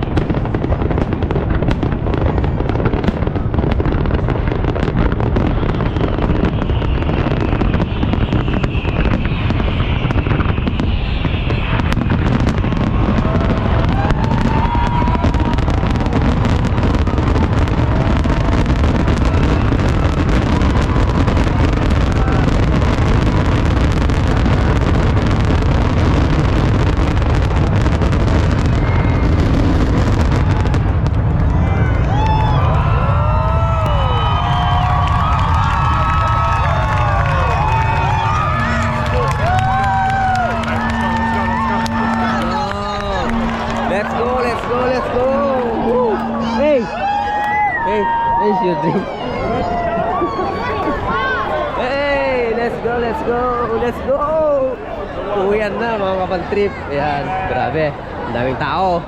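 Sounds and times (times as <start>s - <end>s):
falling firework whistle: 0.0s - 51.8s
fireworks booming and crackling: 0.0s - 59.0s.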